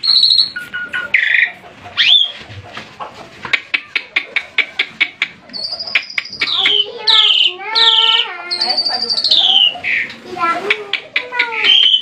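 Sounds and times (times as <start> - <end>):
songbird singing: 0.0 - 2.4, 5.2 - 10.2, 11.1 - 12.0.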